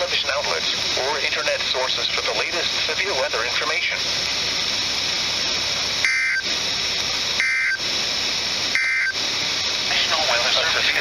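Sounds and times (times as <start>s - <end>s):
radio static hiss: 0.0s - 11.0s
two-tone digital data burst: 6.0s - 6.4s, 7.4s - 7.8s, 8.8s - 9.2s.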